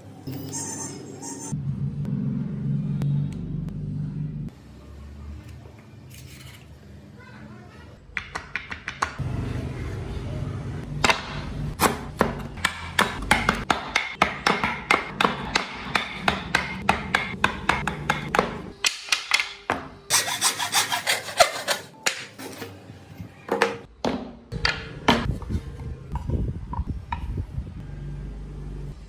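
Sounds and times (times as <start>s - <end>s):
hand tool scraping wood: 20.1s - 21.9s.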